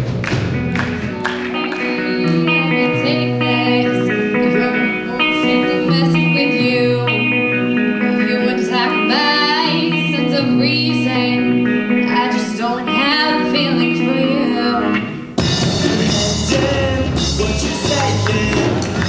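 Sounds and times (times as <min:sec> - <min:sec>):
guitar: 0:00.0 - 0:19.0
live pop-rock band: 0:00.0 - 0:19.0
person singing: 0:00.8 - 0:19.0.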